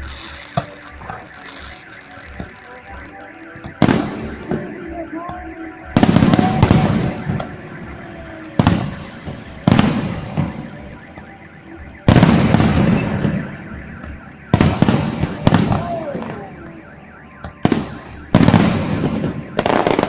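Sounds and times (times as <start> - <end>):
firework shells booming: 6.0 - 7.8, 8.5 - 11.3, 12.0 - 16.4, 17.4 - 20.0.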